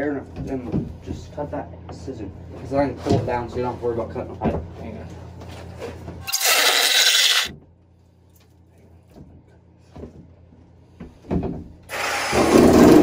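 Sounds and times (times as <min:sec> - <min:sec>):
power tool cutting fiberglass: 0:06.3 - 0:07.5, 0:11.9 - 0:13.0.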